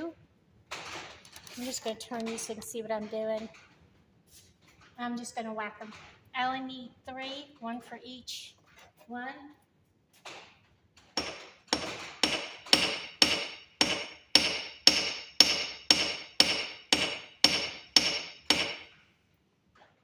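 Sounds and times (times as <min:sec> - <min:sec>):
hammer striking metal rings: 0:11.2 - 0:18.9.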